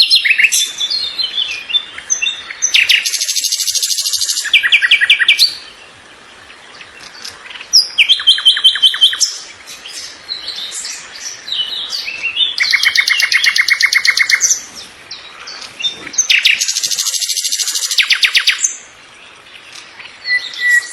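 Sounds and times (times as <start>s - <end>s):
songbird trilling: 0.0s - 20.9s
short high bird chirps: 20.3s - 20.9s.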